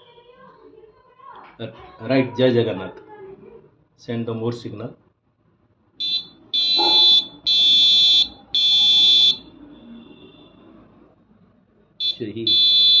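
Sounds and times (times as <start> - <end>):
electronic buzzer beeping morse code: 6.0 - 9.5, 12.0 - 13.0.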